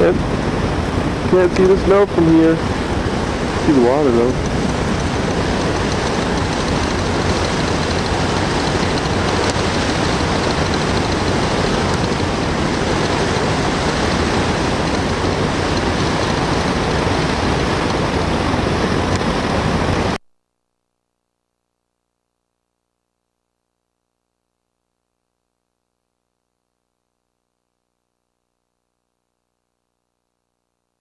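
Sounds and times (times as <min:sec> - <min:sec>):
wind and water rushing: 0:00.0 - 0:20.2.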